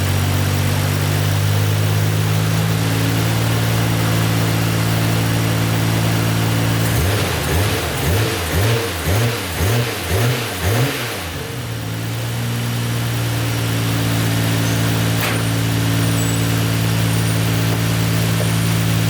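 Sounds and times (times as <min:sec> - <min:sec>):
car engine idling: 0:00.0 - 0:19.0
car engine revving: 0:00.0 - 0:19.0
sharp click: 0:14.6 - 0:15.6.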